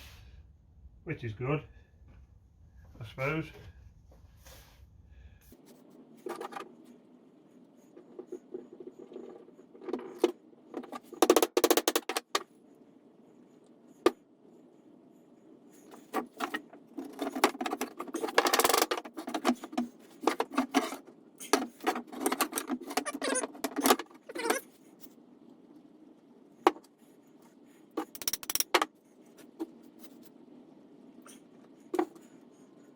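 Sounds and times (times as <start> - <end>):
wooden pieces knocking together: 9.9 - 12.4.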